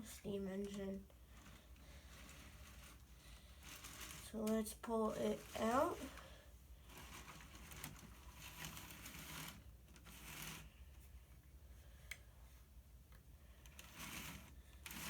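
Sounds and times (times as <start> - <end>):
model train motor whirring: 1.4 - 4.5, 6.9 - 10.7, 13.6 - 15.0
wheels clicking on rails: 13.7 - 15.0.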